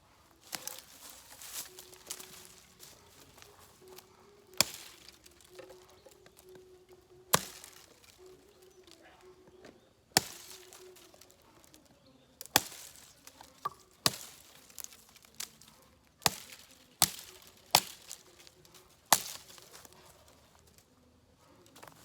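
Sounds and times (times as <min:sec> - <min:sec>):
knife chopping into wood: 0:04.5 - 0:05.3, 0:07.3 - 0:08.2, 0:12.4 - 0:15.6, 0:16.2 - 0:18.3, 0:19.1 - 0:19.9.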